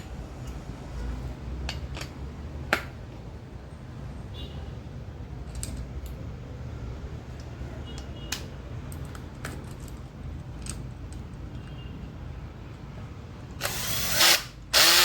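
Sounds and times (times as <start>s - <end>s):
small parts clicking and tapping: 1.6s - 3.0s, 5.4s - 6.3s, 7.3s - 11.8s.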